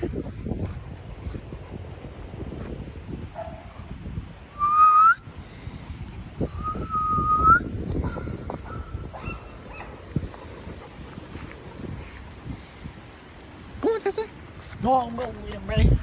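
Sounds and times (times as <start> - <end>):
person whistling: 4.6 - 5.3, 6.5 - 7.7.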